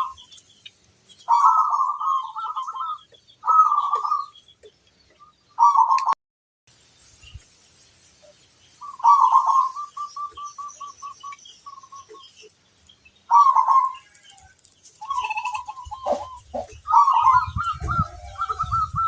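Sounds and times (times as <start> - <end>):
dove cooing: 0.0 - 0.3, 1.3 - 4.3, 5.6 - 6.2, 8.8 - 12.2, 13.3 - 14.2, 15.0 - 19.0
small birds chirping: 0.0 - 19.0.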